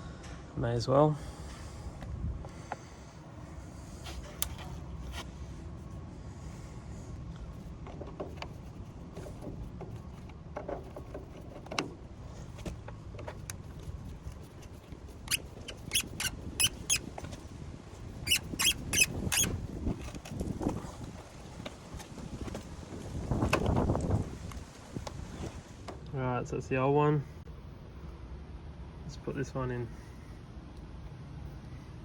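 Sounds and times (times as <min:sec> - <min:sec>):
hand tool clicks and scrapes: 0:14.3 - 0:17.4, 0:18.3 - 0:20.2.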